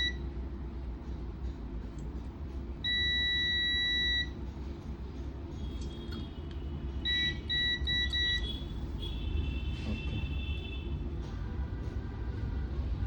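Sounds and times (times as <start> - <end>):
multimeter continuity beeps: 0.0 - 0.2, 2.8 - 4.4, 7.0 - 8.6.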